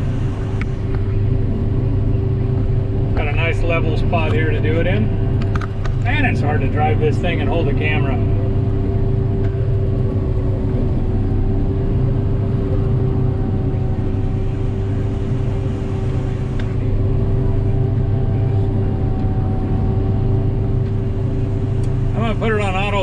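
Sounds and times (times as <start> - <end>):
combine harvester droning: 0.0 - 23.0.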